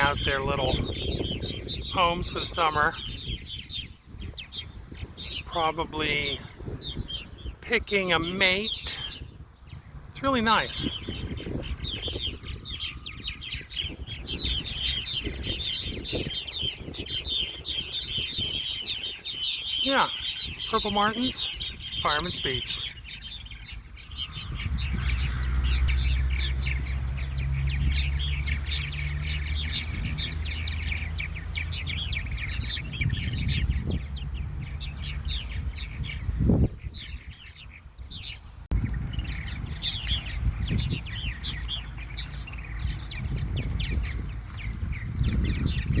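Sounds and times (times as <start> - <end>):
birds twittering and chirping: 0.0 - 46.0.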